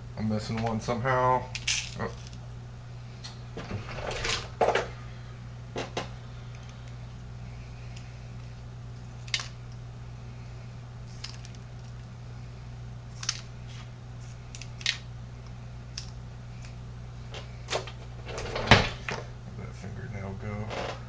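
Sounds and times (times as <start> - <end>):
steady low hum: 0.0 - 21.0
shells and plastic clicking: 9.2 - 9.8, 11.1 - 12.1, 13.2 - 13.5, 14.5 - 16.8.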